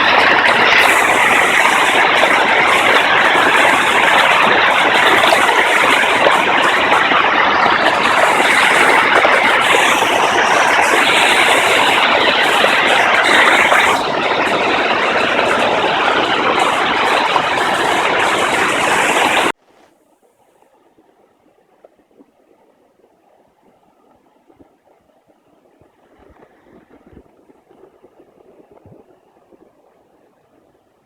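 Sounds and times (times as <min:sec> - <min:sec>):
waterfall roaring: 0:00.0 - 0:19.6.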